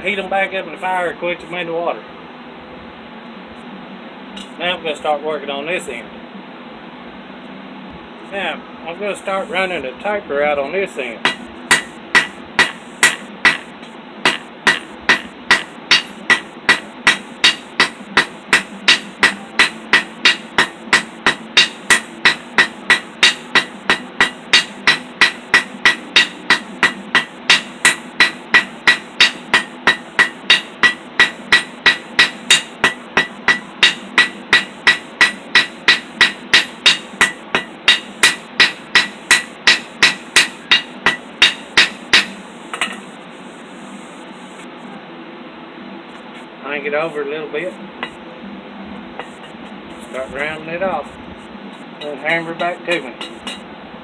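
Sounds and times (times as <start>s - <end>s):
steady low hum: 0.0s - 54.0s
hammer ringing on anvil: 11.2s - 13.7s, 14.3s - 43.0s, 52.0s - 53.6s.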